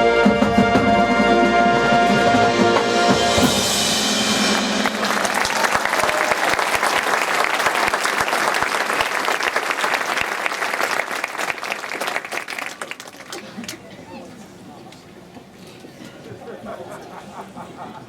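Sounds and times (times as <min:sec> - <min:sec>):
marching band held chord: 0:00.0 - 0:08.0
crowd applauding: 0:04.4 - 0:13.8.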